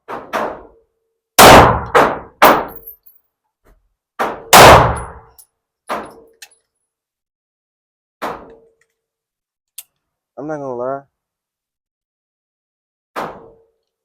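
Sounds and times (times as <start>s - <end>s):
pistol shots: 1.4s - 2.8s, 4.5s - 5.2s.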